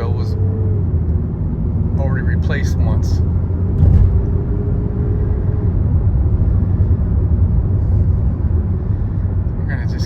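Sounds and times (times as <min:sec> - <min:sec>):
car engine and road noise: 0:00.0 - 0:10.0
car bump: 0:03.7 - 0:04.4.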